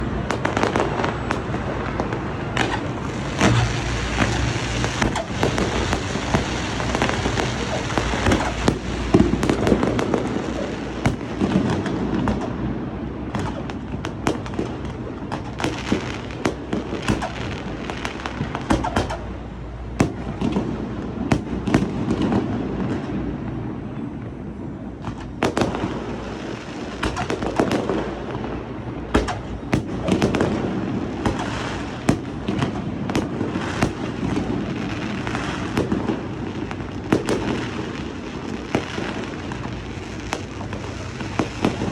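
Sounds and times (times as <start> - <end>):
fireworks bangs and crackles: 0.0 - 41.9
low rumble: 1.3 - 11.3.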